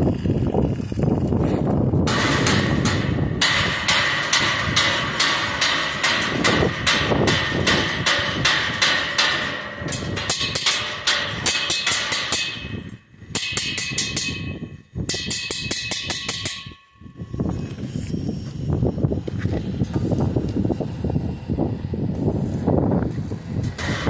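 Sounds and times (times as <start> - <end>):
hammer blows on steel: 2.1 - 17.2.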